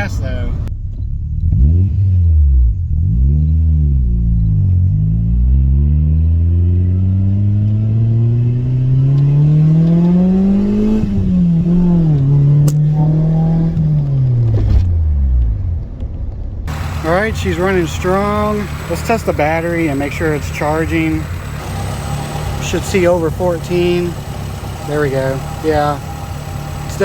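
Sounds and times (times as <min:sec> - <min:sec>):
car engine accelerating: 0:00.0 - 0:27.0.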